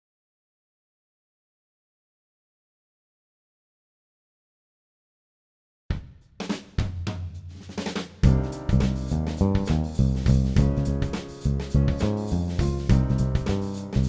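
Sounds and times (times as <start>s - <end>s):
drum hits: 5.9s - 14.0s
band music with drums and bass: 7.8s - 14.0s.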